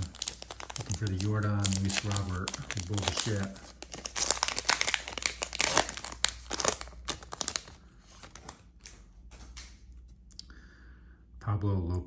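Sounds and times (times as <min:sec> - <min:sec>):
cards handled ticking: 0:00.0 - 0:09.0
plastic wrapper crinkling: 0:00.0 - 0:09.0.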